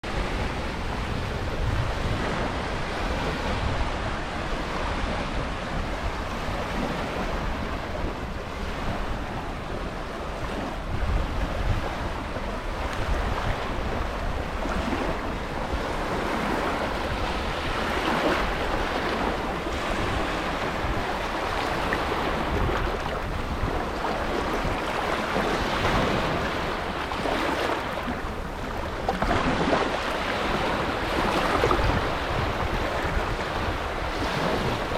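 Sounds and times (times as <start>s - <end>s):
sea waves breaking: 0.0s - 34.9s
wind noise on microphone: 0.0s - 34.9s.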